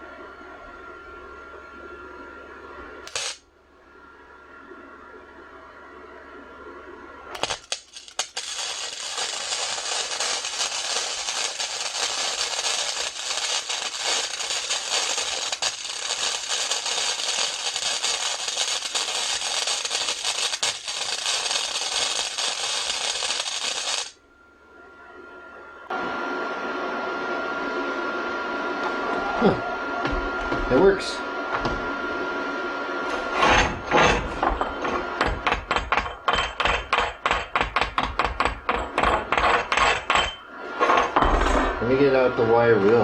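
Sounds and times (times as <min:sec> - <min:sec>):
arc welding crackling sizzle: 0:03.0 - 0:03.5, 0:07.3 - 0:24.2, 0:30.0 - 0:43.0.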